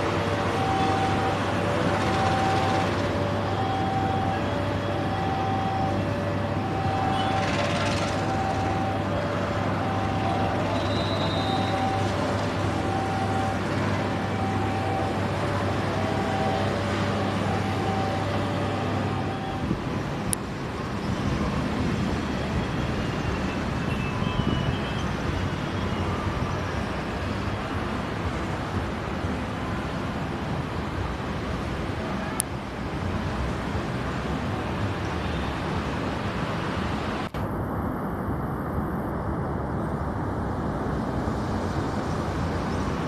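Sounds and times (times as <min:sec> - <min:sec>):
vehicle low hum: 0:00.0 - 0:22.5.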